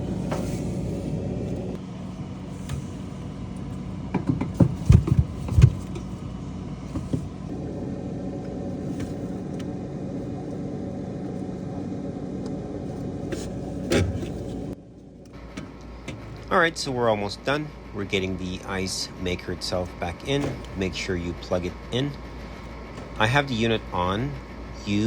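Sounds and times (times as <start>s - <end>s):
refrigerator humming: 0.0s - 25.0s
plastic parts knocking: 4.1s - 6.2s, 22.3s - 23.7s.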